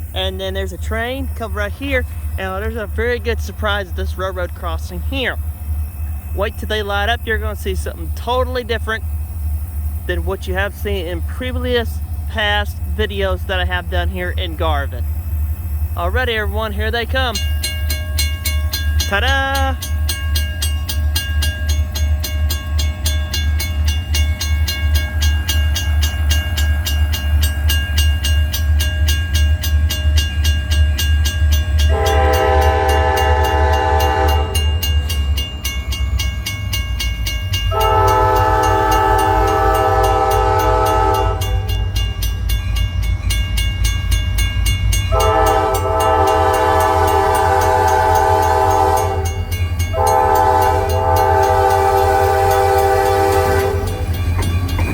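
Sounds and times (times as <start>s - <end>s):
diesel locomotives rumbling: 0.0s - 54.9s
train air horn blasts: 31.9s - 34.8s, 37.7s - 41.8s, 45.1s - 54.1s.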